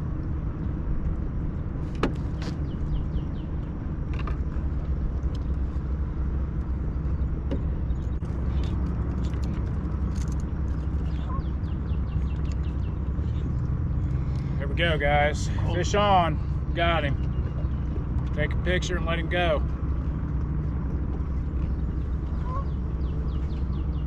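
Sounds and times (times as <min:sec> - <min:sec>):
low engine-like rumble: 0:00.0 - 0:24.0.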